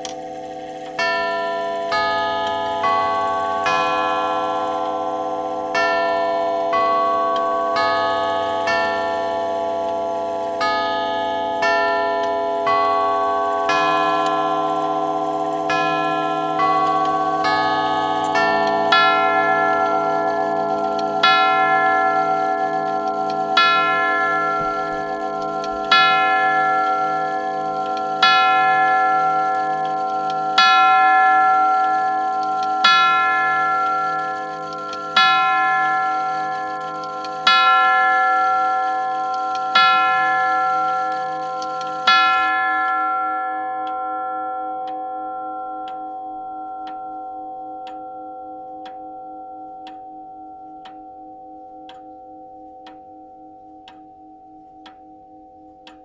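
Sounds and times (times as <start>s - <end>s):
clock ticking: 0.0s - 42.9s, 51.8s - 52.2s, 53.8s - 54.1s, 54.8s - 55.1s
clock chime striking: 0.0s - 56.0s.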